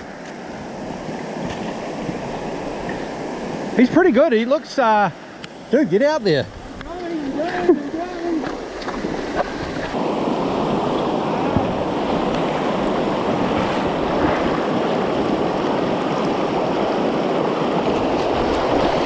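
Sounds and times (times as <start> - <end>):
river water rushing: 0.0 - 19.0.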